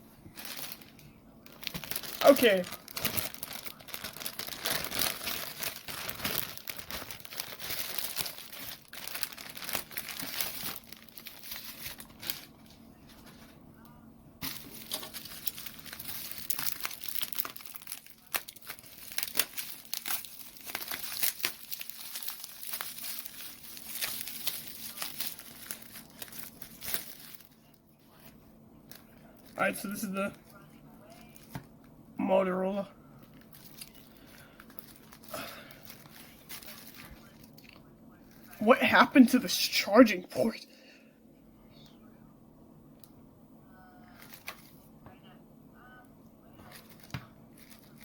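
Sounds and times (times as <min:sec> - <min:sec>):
bubble wrap crinkling: 0:00.2 - 0:13.6, 0:14.4 - 0:31.7, 0:33.2 - 0:38.7, 0:44.1 - 0:44.9, 0:46.6 - 0:48.0.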